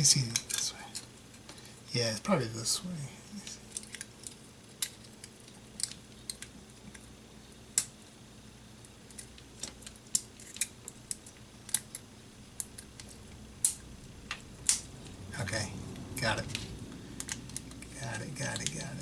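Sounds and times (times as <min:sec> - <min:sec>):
plastic parts clicking: 0:17.2 - 0:17.9.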